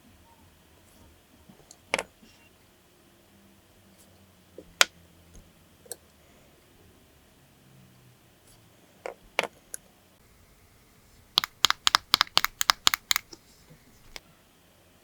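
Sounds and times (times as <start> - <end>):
small hard objects tapping: 11.3 - 13.3.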